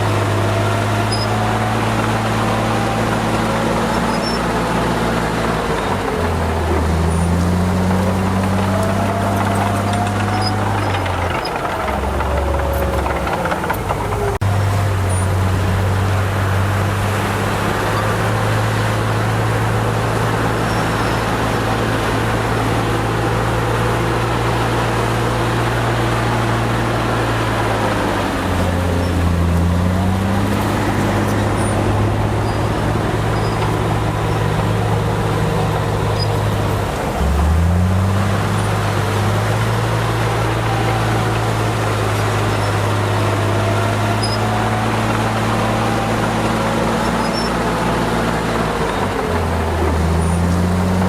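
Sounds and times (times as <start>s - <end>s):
heavy diesel engine running hard: 0.0s - 51.0s.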